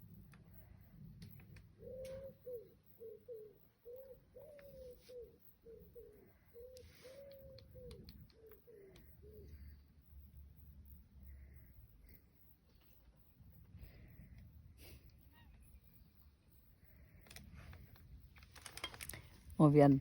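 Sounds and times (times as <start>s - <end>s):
dove cooing: 1.6s - 9.8s
faint low rumble: 6.2s - 20.0s.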